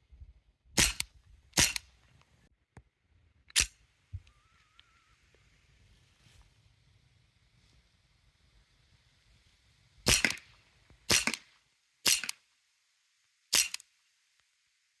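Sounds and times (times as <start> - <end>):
bb pistol shots: 0.8 - 1.9, 10.1 - 10.5, 11.1 - 11.5, 12.1 - 12.4, 13.6 - 13.8.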